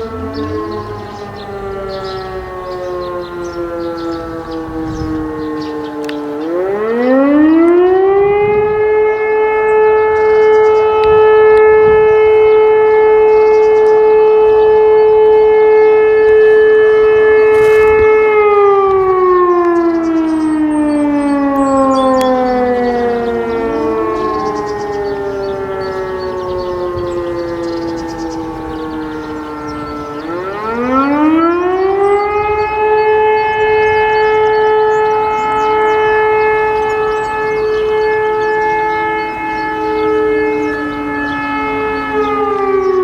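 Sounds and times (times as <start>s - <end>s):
sirens winding up and down: 0.0s - 43.0s.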